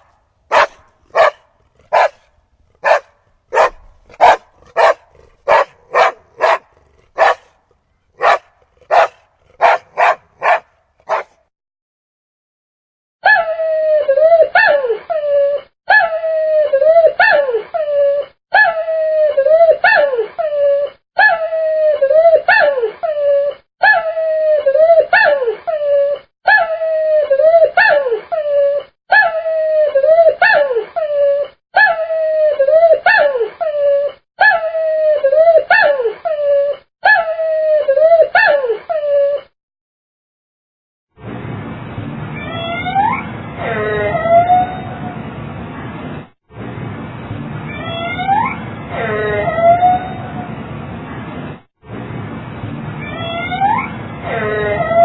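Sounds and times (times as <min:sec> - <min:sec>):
puppy whining: 0:00.5 - 0:01.3, 0:01.9 - 0:02.1, 0:02.8 - 0:06.6, 0:08.2 - 0:11.3
puppy yelps: 0:00.5 - 0:02.2, 0:02.8 - 0:06.6, 0:07.2 - 0:07.5, 0:08.2 - 0:11.3.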